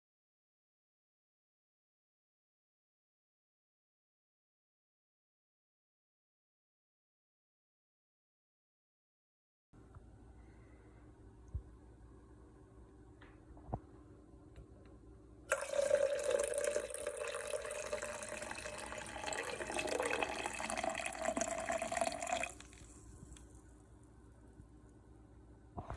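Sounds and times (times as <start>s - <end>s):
liquid pouring into container: 15.5s - 23.6s.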